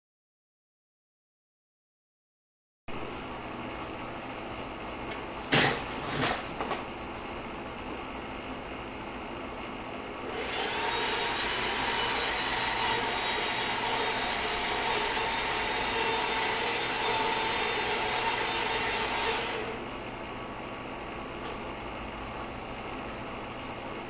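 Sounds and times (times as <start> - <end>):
small electric motor whining: 10.3 - 19.8.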